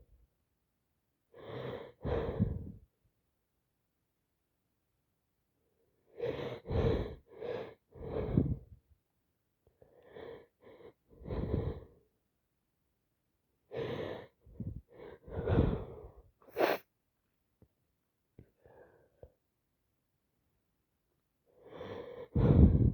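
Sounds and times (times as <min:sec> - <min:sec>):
congested nasal breathing and sniffling: 0:13.8 - 0:16.9.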